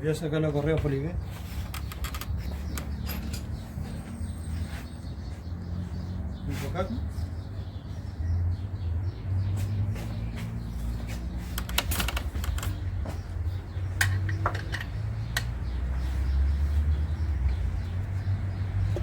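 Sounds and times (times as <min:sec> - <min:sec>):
metal tools clicking and knocking: 0:01.6 - 0:04.1, 0:11.5 - 0:13.0, 0:14.0 - 0:15.5.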